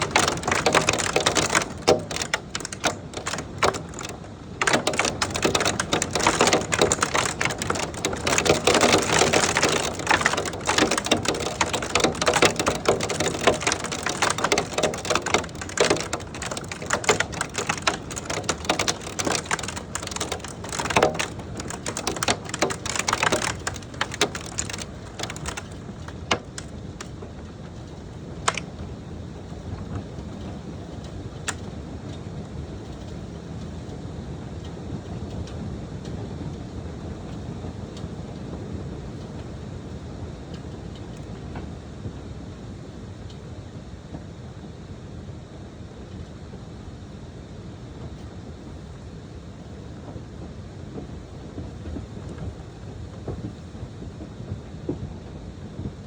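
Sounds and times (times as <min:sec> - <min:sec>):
hailstones pelting: 0:00.0 - 0:29.0
rain falling: 0:00.0 - 0:32.2.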